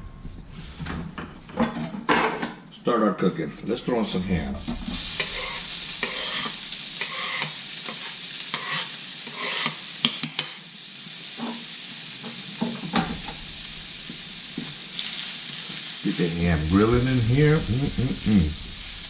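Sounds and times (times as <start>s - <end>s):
utensil scraping a pan: 4.6s - 9.8s
ham sizzling in oil: 4.6s - 19.0s.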